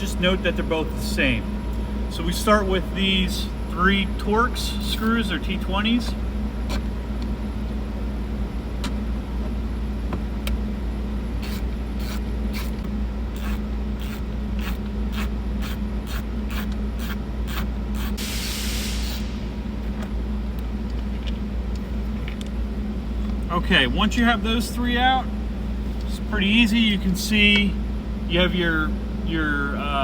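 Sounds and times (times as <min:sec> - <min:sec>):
steady low hum: 0:00.0 - 0:30.0
hiss: 0:16.5 - 0:19.4.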